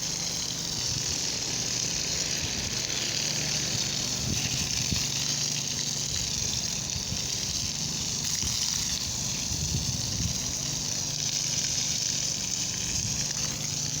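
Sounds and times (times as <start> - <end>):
low motor hum: 0.0 - 14.0.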